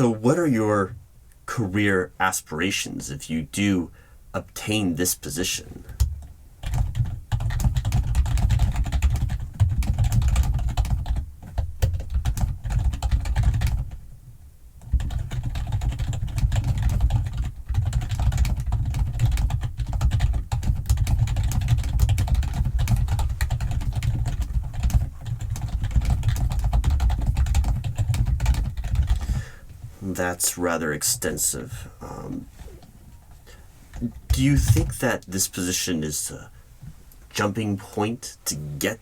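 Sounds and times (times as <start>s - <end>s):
fast typing on keyboard: 5.9s - 14.0s, 14.8s - 29.4s.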